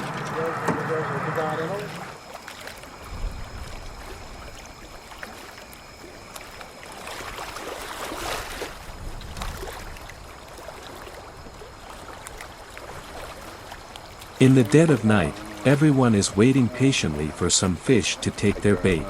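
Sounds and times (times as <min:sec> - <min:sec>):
river water rushing: 0:12.9 - 0:19.0.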